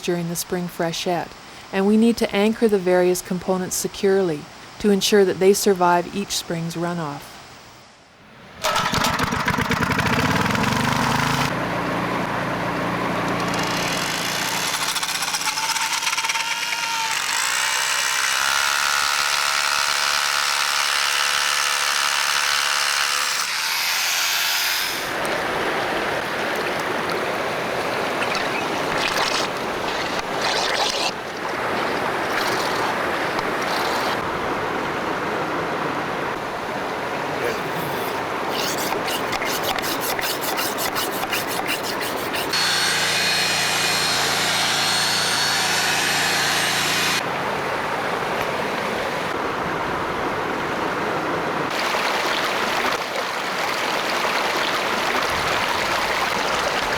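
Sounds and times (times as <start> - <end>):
small power tool running: 8.6 - 25.2, 37.8 - 47.2.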